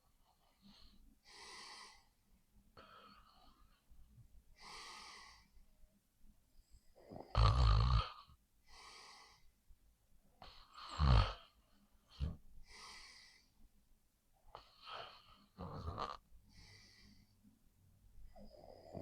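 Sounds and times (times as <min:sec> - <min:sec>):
person snoring: 0:07.1 - 0:08.2, 0:10.8 - 0:11.5, 0:14.6 - 0:17.2
soft airy breaths out: 0:16.5 - 0:17.6.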